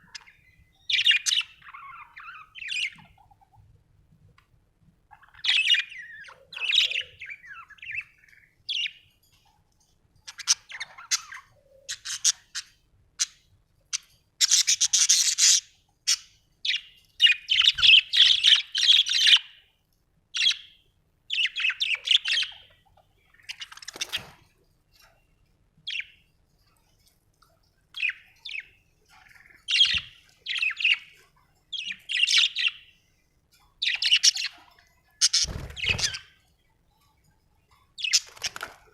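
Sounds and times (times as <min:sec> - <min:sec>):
budgerigars chirping: 0:00.0 - 0:03.6, 0:05.1 - 0:09.0, 0:10.2 - 0:19.6, 0:20.4 - 0:24.4, 0:25.9 - 0:26.2, 0:28.0 - 0:32.9, 0:33.8 - 0:36.4, 0:38.0 - 0:38.8.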